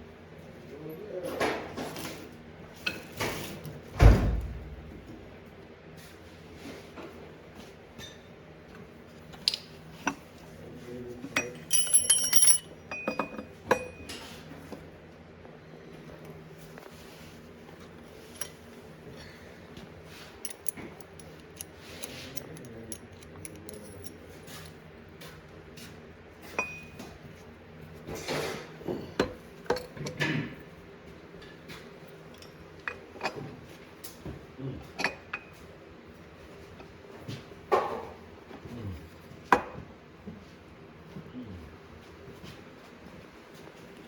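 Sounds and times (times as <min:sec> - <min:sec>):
metal tools clinking and knocking: 0:11.3 - 0:14.2, 0:18.2 - 0:18.6, 0:20.4 - 0:24.8
short metallic ring: 0:11.7 - 0:13.1.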